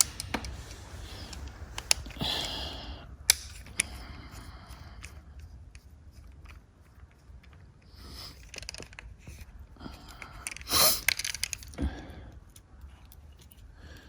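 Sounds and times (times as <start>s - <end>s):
screwdriver clicks and scrapes: 0.0s - 2.2s, 3.3s - 9.5s.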